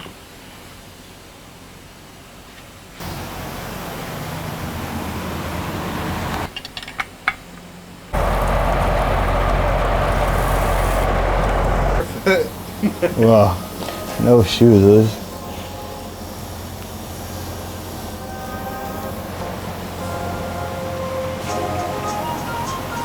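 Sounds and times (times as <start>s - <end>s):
vehicle running and road noise: 3.0s - 6.5s, 8.1s - 12.2s.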